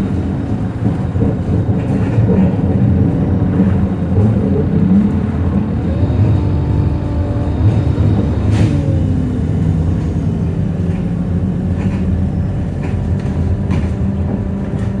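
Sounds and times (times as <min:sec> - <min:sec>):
bus engine droning: 0:00.0 - 0:15.0.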